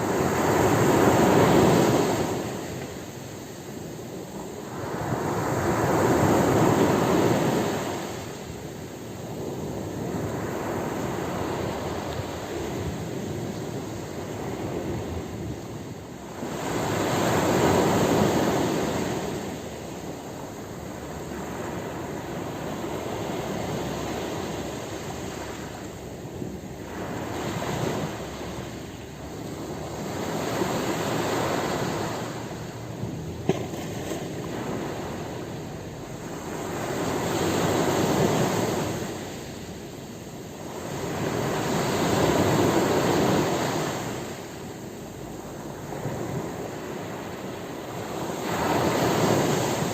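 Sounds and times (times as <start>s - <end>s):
ocean waves crashing on beach: 0.0s - 49.9s.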